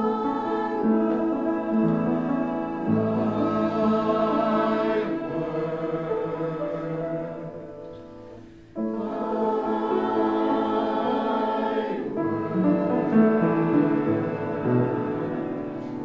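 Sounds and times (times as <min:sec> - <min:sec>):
choir singing a hymn: 0:00.0 - 0:16.0.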